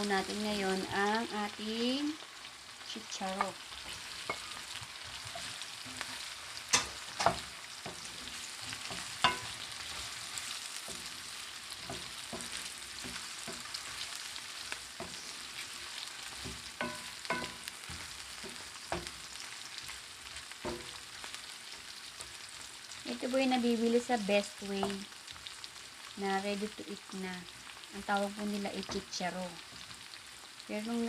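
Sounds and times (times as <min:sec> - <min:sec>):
food sizzling in oil: 0:00.0 - 0:31.0
utensil knocking against pan: 0:08.9 - 0:09.5, 0:16.4 - 0:17.6.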